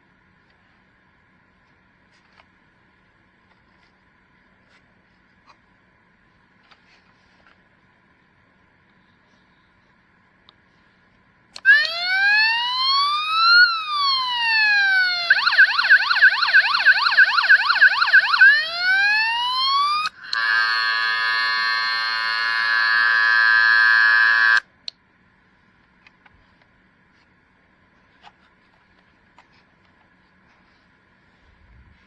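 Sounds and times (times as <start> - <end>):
electronic siren wailing: 11.6 - 24.6
horn-like blare: 20.2 - 24.6.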